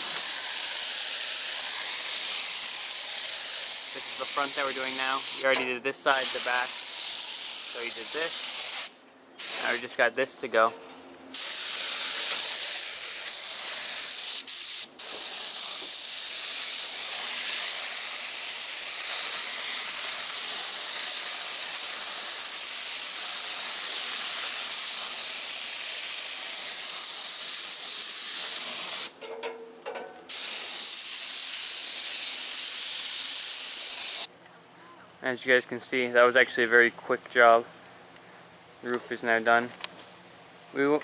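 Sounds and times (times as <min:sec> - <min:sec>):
spray gun hissing: 0:00.0 - 0:10.0, 0:11.3 - 0:29.2, 0:30.3 - 0:34.3.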